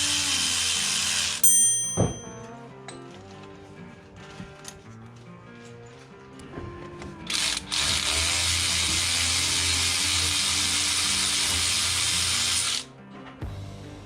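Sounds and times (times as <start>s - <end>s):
power tool running: 0.0s - 1.5s, 7.3s - 12.8s.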